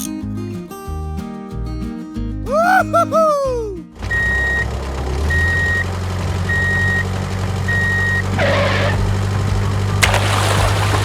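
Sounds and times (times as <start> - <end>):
low engine hum: 4.0 - 11.0.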